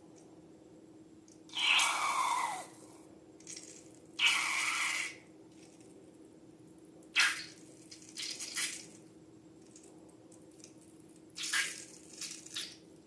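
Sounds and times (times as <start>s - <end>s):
wet slime squishing and dripping: 7.2s - 9.0s, 10.5s - 13.0s.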